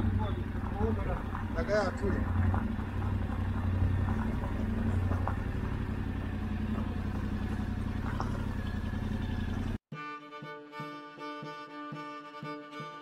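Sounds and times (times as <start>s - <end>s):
motorcycle engine idling: 0.0s - 9.8s
violin music: 9.9s - 13.0s.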